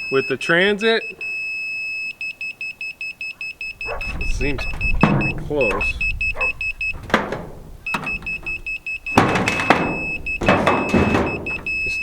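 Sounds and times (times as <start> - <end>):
laser receiver beeping: 0.0 - 12.0
rustling or scraping: 3.8 - 12.0.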